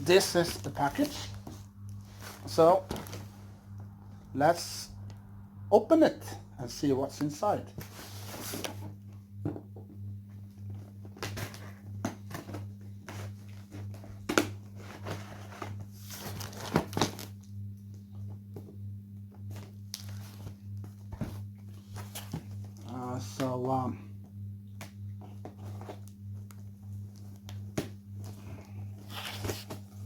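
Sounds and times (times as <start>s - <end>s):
steady low hum: 0.0s - 30.0s
packaging tearing and rustling: 29.0s - 29.9s.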